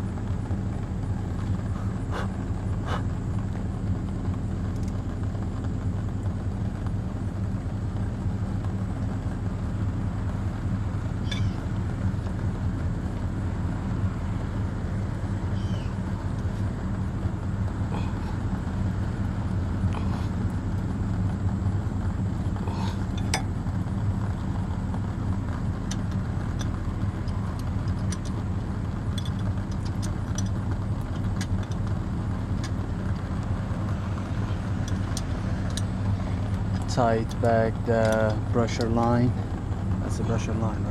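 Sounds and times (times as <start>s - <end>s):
engine idling: 0.0s - 40.9s
faint clicks and clinks: 25.8s - 32.0s.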